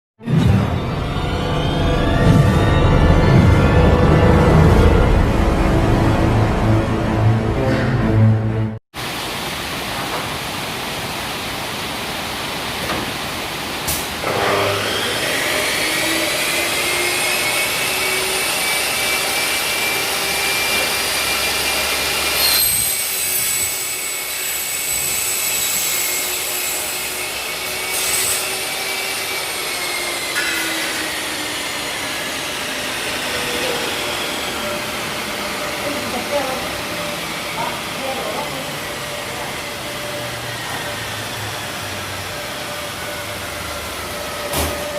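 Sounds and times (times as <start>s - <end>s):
cutting saw motor whining: 14.2s - 44.9s.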